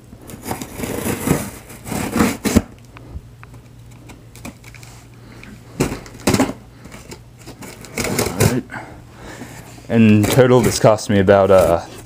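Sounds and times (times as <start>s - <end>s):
packaging rustling and scraping: 0.2s - 2.8s, 3.6s - 12.0s.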